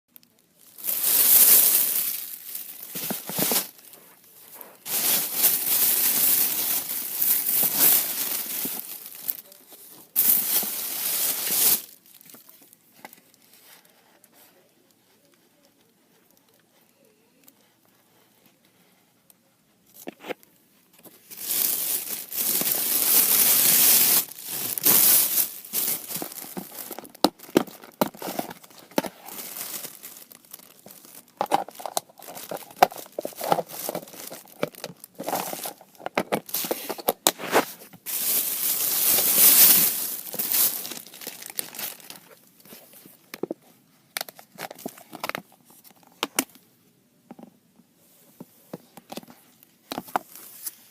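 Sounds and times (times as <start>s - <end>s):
packaging crinkling and tearing: 0.2s - 4.0s, 4.6s - 13.3s, 21.1s - 42.8s.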